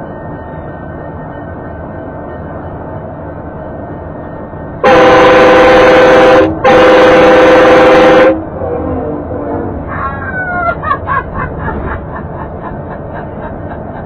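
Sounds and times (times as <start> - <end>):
road noise: 0.0 - 14.0
loud train horn chord: 4.8 - 9.8.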